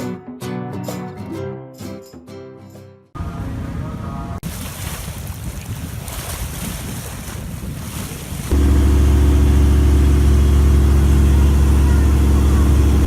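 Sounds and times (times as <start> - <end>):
wind buffeting microphone: 3.4 - 9.5
sea waves washing: 3.5 - 13.0
engine running low hum: 8.5 - 13.0.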